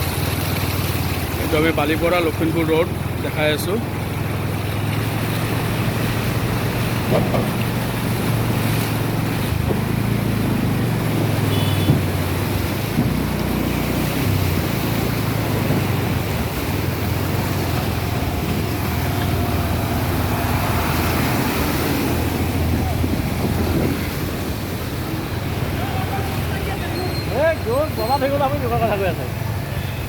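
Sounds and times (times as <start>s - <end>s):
rushing floodwater: 0.0s - 30.0s
vehicle engine running low: 0.0s - 30.0s
wind on microphone: 17.9s - 24.8s.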